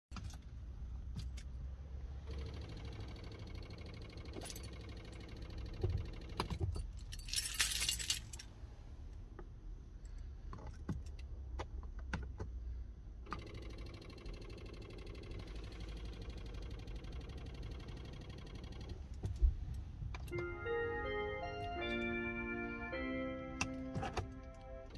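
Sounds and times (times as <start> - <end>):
keys jangling: 6.7 - 8.4.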